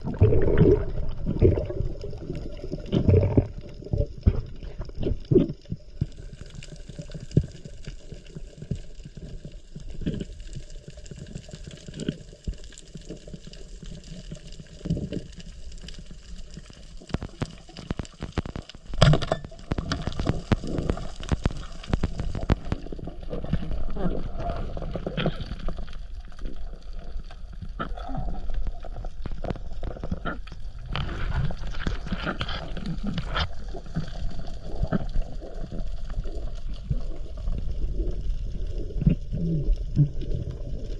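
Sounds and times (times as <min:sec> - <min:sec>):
underwater rumble and gurgling: 0:00.0 - 0:40.9
underwater clicks and knocks: 0:02.8 - 0:06.2, 0:17.1 - 0:23.8.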